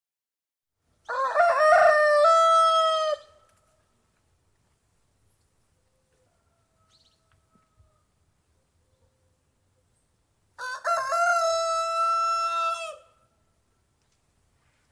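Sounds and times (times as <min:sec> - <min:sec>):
rooster crowing: 0:01.0 - 0:03.4, 0:06.1 - 0:08.2, 0:10.6 - 0:13.2.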